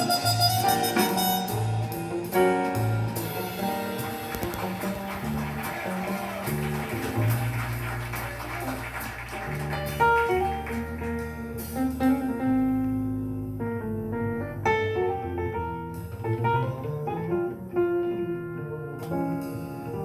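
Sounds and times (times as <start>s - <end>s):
jazz with guitar and bass: 0.0s - 20.0s.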